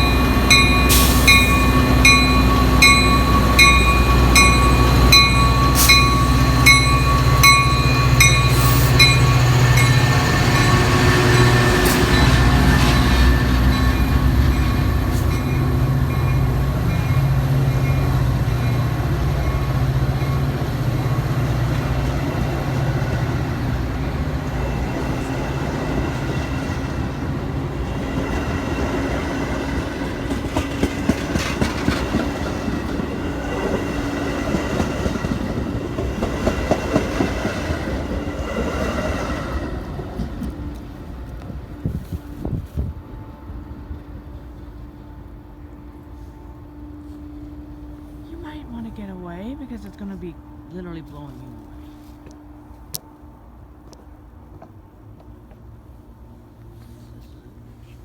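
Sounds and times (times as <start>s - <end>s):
crossing bell ringing: 0.0s - 23.4s
diesel train rumbling past: 0.0s - 58.0s.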